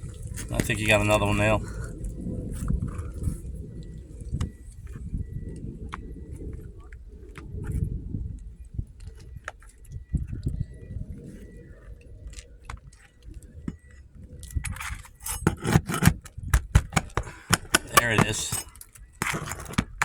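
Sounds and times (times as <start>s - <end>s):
metal tools scraping on shingles: 13.7s - 20.0s
sharp metallic clinks and rattles: 14.6s - 20.0s.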